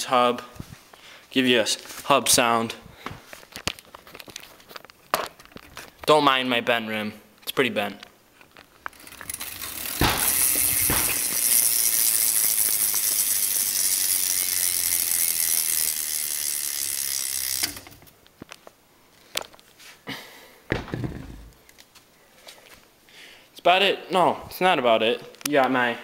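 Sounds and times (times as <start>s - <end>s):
scattered clicks and knocks: 8.5s - 11.7s
bicycle hub freewheel clicking: 8.8s - 18.1s.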